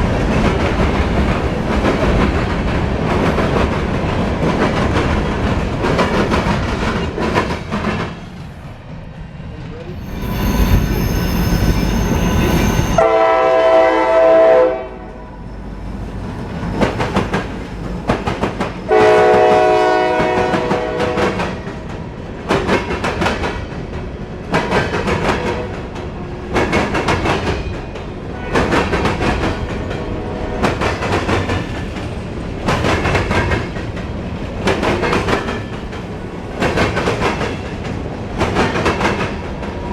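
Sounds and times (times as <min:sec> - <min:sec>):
train wheels clacking on rail joints: 0:00.0 - 0:08.5, 0:16.3 - 0:39.9
train horn blasts: 0:10.2 - 0:15.5, 0:18.9 - 0:21.4.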